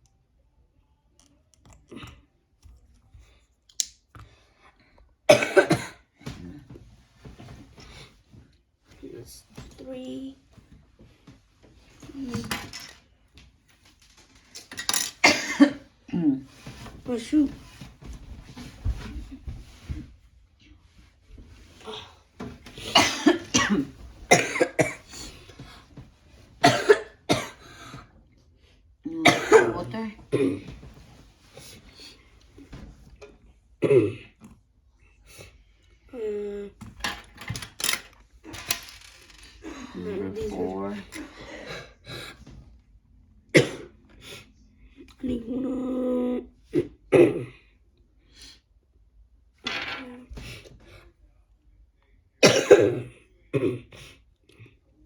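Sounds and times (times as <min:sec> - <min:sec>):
person coughing: 0:05.3 - 0:06.1, 0:15.2 - 0:15.8, 0:22.8 - 0:25.3, 0:26.6 - 0:27.6, 0:29.2 - 0:30.7, 0:33.8 - 0:34.3, 0:46.8 - 0:47.6, 0:52.4 - 0:54.1.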